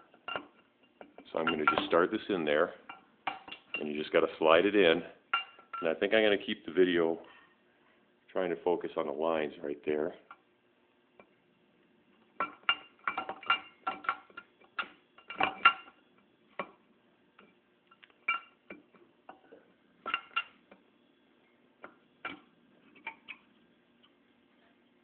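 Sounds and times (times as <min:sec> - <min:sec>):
metal clinks and taps: 0:00.1 - 0:02.0, 0:02.9 - 0:03.9, 0:05.3 - 0:05.9, 0:12.4 - 0:16.0, 0:17.4 - 0:20.9.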